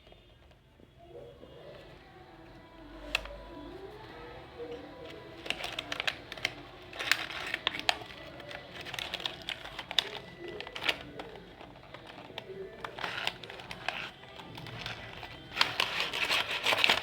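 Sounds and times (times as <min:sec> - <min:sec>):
packaging crinkling and clicking: 0:01.8 - 0:17.0.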